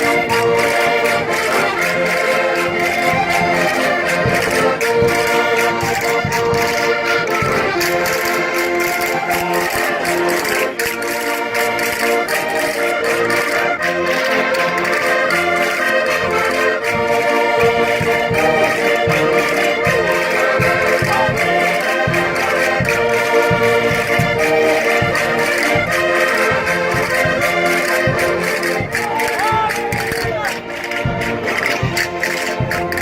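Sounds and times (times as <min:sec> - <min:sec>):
concertinas playing folk dance tune: 0:00.0 - 0:33.0
low thumping beat: 0:16.2 - 0:33.0.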